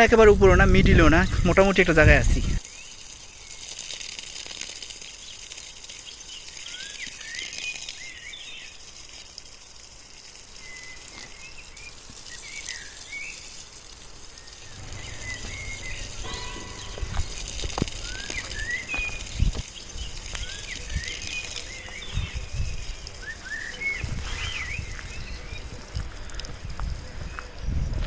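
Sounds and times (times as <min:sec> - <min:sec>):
steady high hiss: 0:05.7 - 0:27.9
small birds chirping: 0:10.6 - 0:27.7
low rumble: 0:14.6 - 0:22.7.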